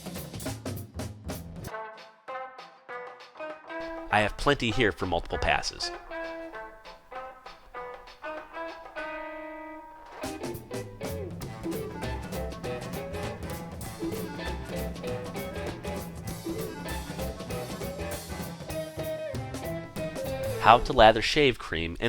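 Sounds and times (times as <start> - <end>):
instrumental music with beat: 0.0 - 20.8.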